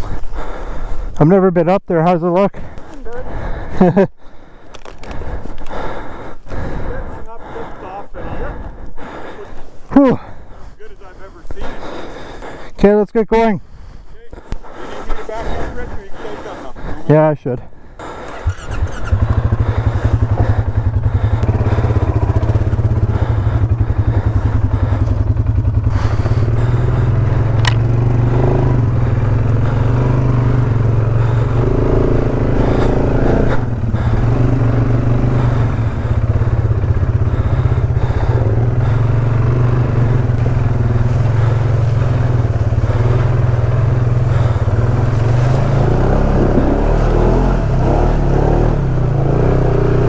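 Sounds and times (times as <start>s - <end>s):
atv engine running: 4.7s - 12.7s, 18.0s - 50.0s.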